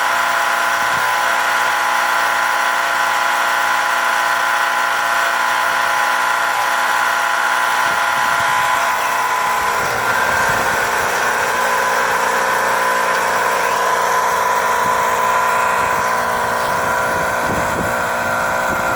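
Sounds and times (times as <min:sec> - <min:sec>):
heat pump mechanical whine: 0:00.0 - 0:18.9.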